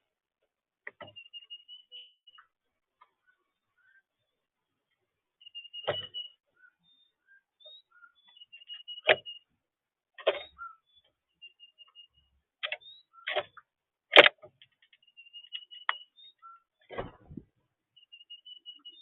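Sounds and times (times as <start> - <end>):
small birds chirping: 0.0 - 19.0
sharp clicks or knocks: 12.6 - 15.0.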